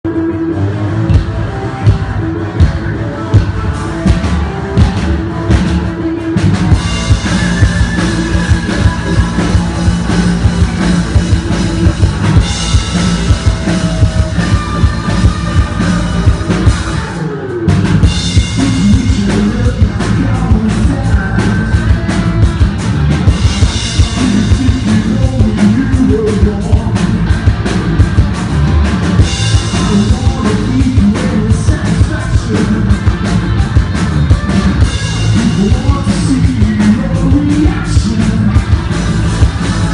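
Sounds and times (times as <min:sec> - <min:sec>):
person singing: 0:00.0 - 0:27.6, 0:29.2 - 0:39.9
electric guitars: 0:00.1 - 0:39.9
drum kit driving beat: 0:01.1 - 0:39.9.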